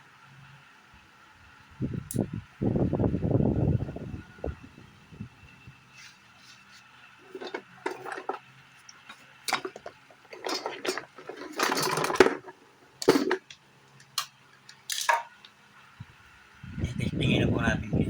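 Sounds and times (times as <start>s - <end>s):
scraping rustle: 5.9s - 8.4s, 9.0s - 13.4s
hard objects knocking and clattering: 7.2s - 8.4s, 9.5s - 13.5s.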